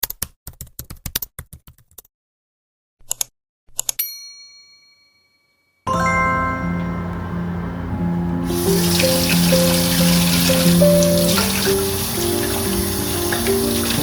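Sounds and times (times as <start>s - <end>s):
bell-like ding: 4.1s - 8.2s
soft music: 5.9s - 14.0s.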